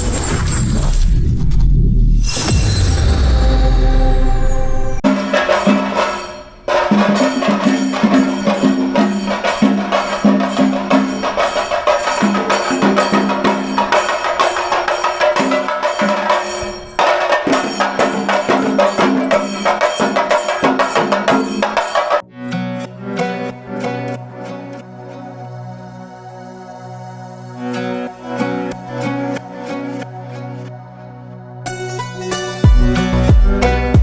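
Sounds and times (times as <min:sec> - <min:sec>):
fast percussion: 0:05.0 - 0:22.2, 0:32.6 - 0:34.0.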